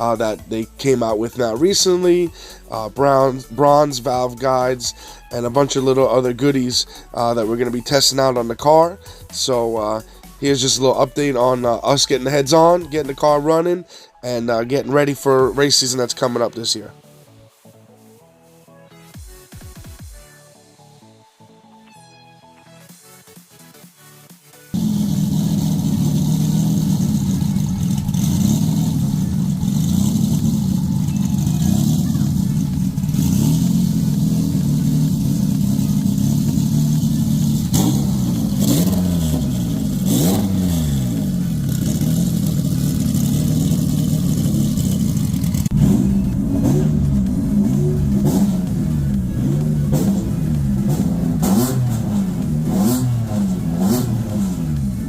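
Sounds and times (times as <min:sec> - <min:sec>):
car engine revving: 0:24.8 - 0:55.0.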